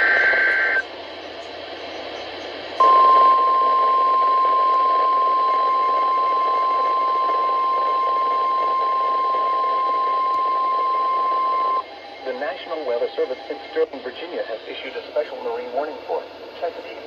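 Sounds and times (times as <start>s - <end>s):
radio hiss: 0.0s - 0.8s, 4.6s - 17.0s
steady warning alarm tone: 0.0s - 0.8s, 2.8s - 11.8s.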